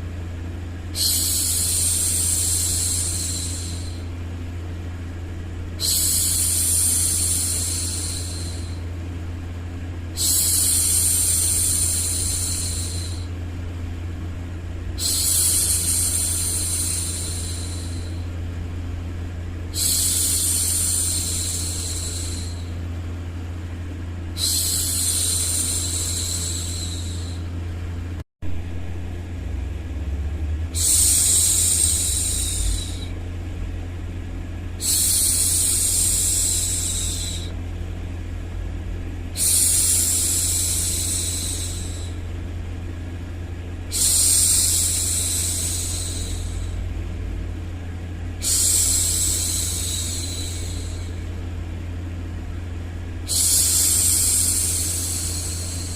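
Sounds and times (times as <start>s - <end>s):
low white-noise hum: 0.0s - 55.9s
woman shushing: 1.0s - 4.0s, 5.8s - 8.8s, 24.4s - 27.5s, 30.8s - 33.2s, 34.8s - 37.5s, 48.4s - 51.3s.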